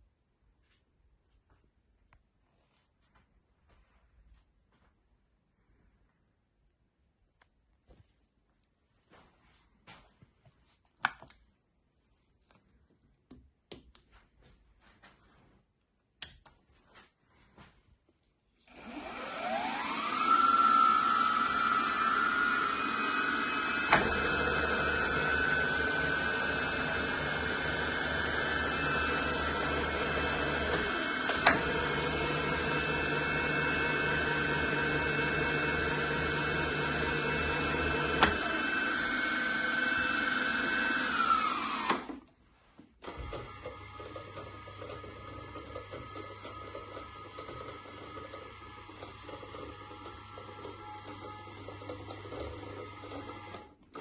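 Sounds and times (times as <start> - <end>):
electric motor whine: 18.7 - 42.2.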